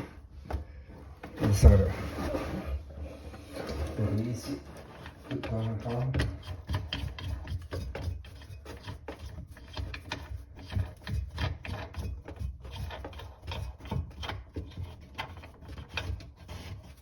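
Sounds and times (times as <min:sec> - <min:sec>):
scraping rubs: 0:01.2 - 0:17.0.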